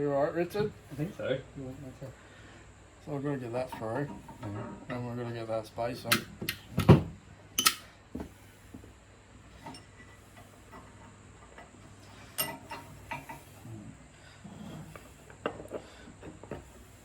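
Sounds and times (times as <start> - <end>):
metal parts clicking and tapping: 7.6 - 7.9, 12.3 - 13.4.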